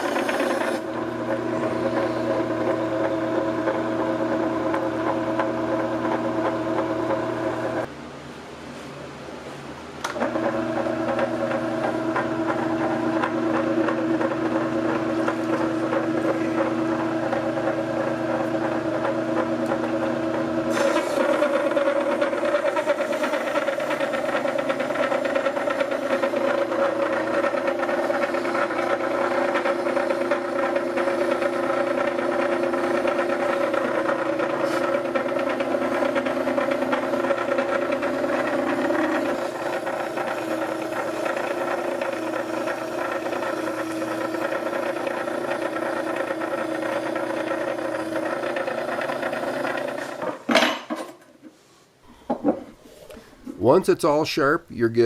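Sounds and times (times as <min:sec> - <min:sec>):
whetstone grinder running: 0:00.0 - 0:07.9, 0:10.0 - 0:50.5.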